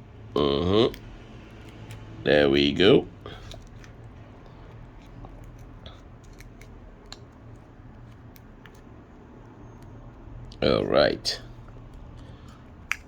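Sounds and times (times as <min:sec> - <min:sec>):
pry tool scraping and clicking: 0:03.3 - 0:08.9.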